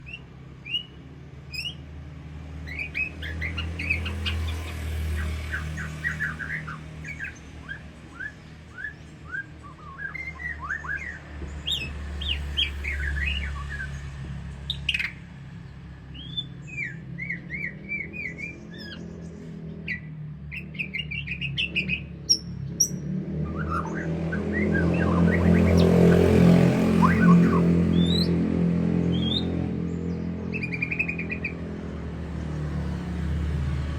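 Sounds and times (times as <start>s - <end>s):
bird singing: 0.0s - 1.9s, 2.6s - 33.9s.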